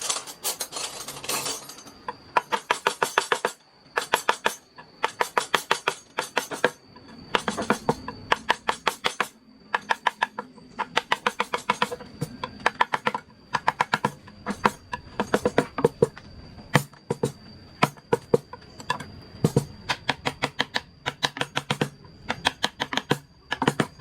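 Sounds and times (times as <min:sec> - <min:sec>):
mallet tapping carving chisel: 0:04.0 - 0:16.0, 0:18.9 - 0:24.0.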